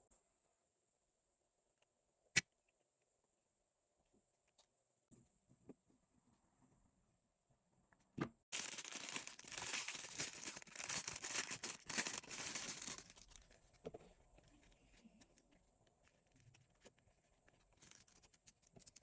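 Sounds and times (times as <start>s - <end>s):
packaging tearing and crinkling: 8.5s - 13.6s.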